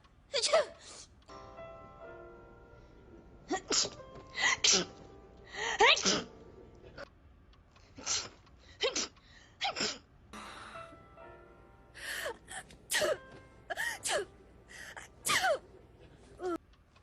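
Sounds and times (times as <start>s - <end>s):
background music: 1.3s - 7.0s, 10.4s - 16.6s.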